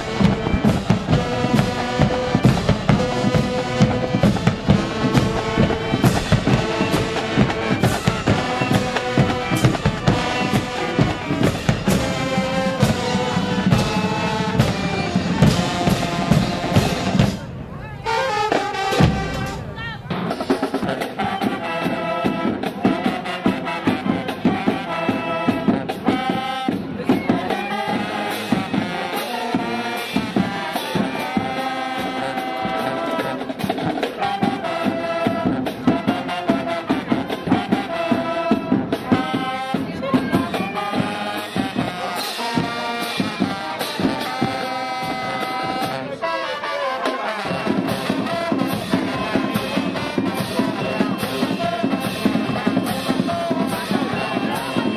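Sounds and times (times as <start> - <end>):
bass drum beat: 0.0 - 17.5
snare drum beat: 0.0 - 17.5, 47.0 - 54.9
brass horns melody: 0.0 - 54.9
marching band playing: 0.0 - 54.9.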